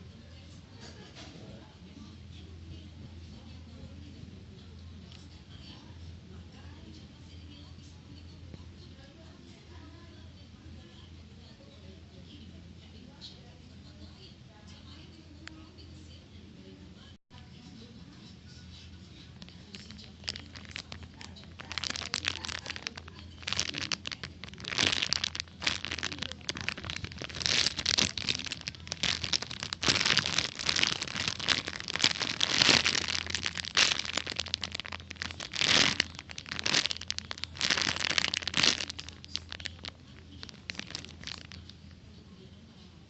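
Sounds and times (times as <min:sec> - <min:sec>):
crinkling handling noise: 0:19.4 - 0:41.8.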